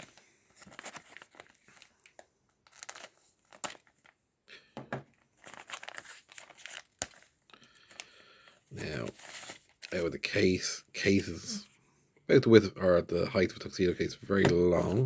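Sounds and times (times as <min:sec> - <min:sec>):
packaging crinkling: 0:00.0 - 0:04.2, 0:05.2 - 0:10.0
packaging tearing: 0:00.6 - 0:04.1, 0:05.4 - 0:08.0.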